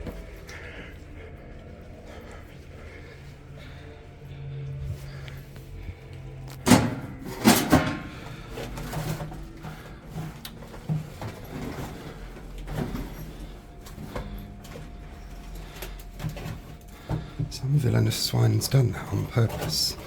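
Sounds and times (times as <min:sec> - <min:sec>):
shuffling: 0:08.0 - 0:20.0.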